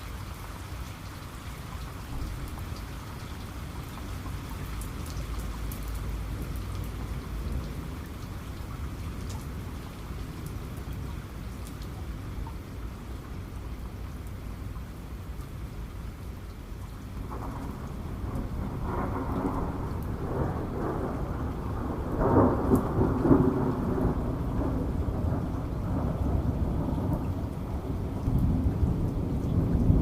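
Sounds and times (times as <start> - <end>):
steady rain: 0.0 - 30.0
rolling thunder: 17.2 - 30.0.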